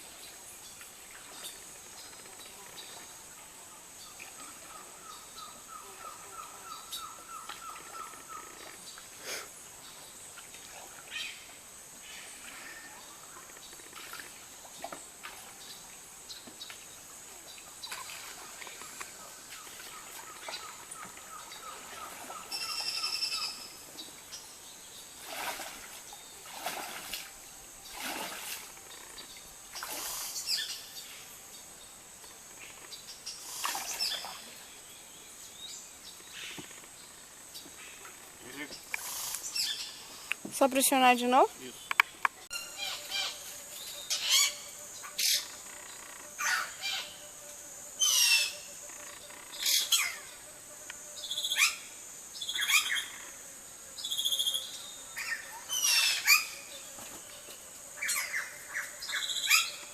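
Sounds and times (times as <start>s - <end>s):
high-pitched insect drone: 28.0s - 31.2s, 42.5s - 56.9s.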